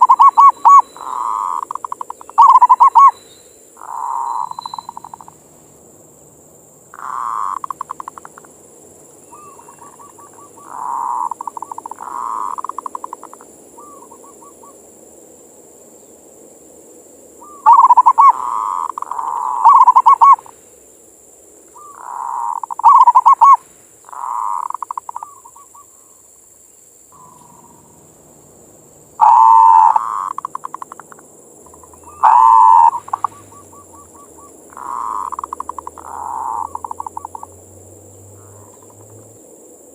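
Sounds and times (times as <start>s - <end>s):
dove cooing: 0.0s - 3.2s, 3.8s - 5.3s, 6.9s - 8.5s, 9.3s - 14.8s, 17.4s - 20.5s, 21.8s - 25.9s, 29.2s - 37.6s, 38.3s - 39.2s.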